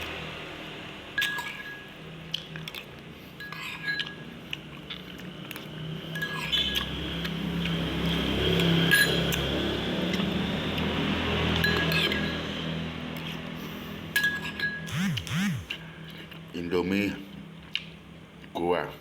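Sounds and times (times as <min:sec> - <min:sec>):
chewing: 0:02.2 - 0:08.2.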